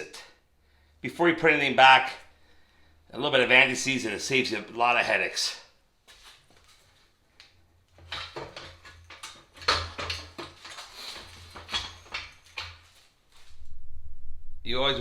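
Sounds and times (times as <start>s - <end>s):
metal tools clinking and knocking: 7.9s - 13.0s
faint low hum: 13.4s - 15.0s.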